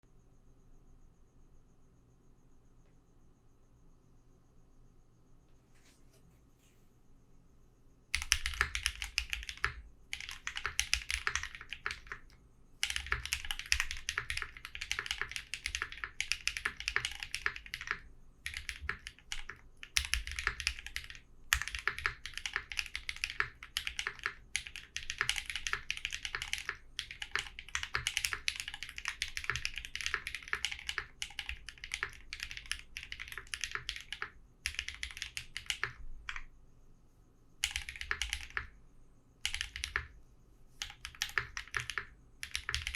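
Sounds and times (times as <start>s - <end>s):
mechanical keyboard typing: 8.2s - 36.5s, 37.6s - 38.8s, 39.4s - 40.2s, 40.8s - 42.9s.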